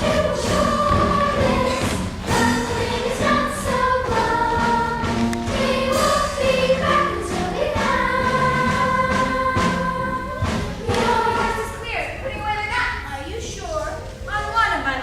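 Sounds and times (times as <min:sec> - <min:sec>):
children's choir singing: 0:00.0 - 0:11.9.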